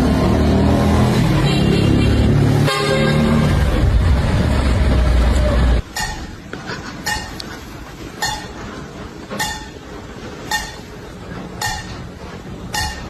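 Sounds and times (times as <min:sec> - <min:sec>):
high ringing ding: 0:10.5 - 0:10.9.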